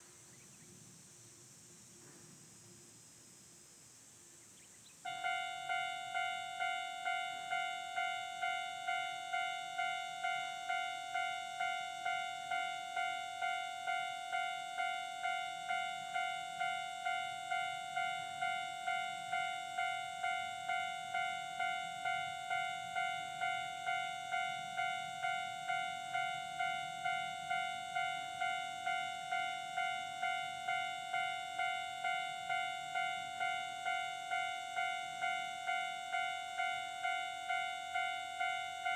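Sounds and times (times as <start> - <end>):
crossing warning bell ringing: 5.1 - 38.9.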